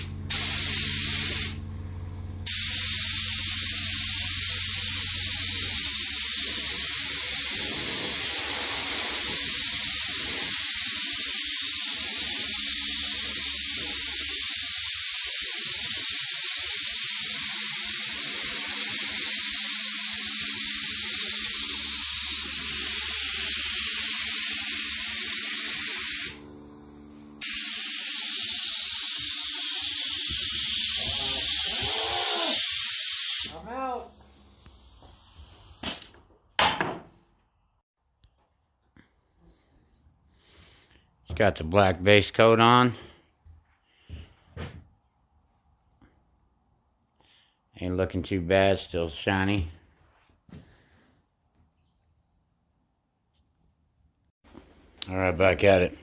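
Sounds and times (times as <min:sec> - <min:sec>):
paint sprayer hissing: 0:00.0 - 0:36.0.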